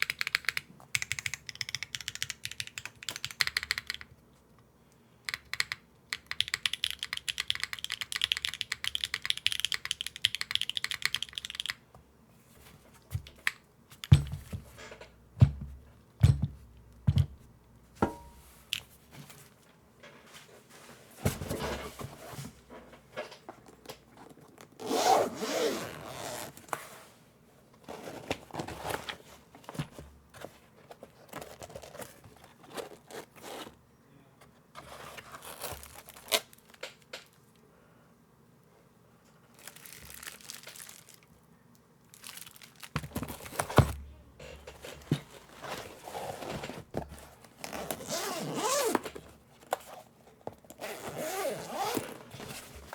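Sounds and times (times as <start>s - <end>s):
fast typing on mechanical keyboard: 0.0s - 4.1s, 5.3s - 11.8s.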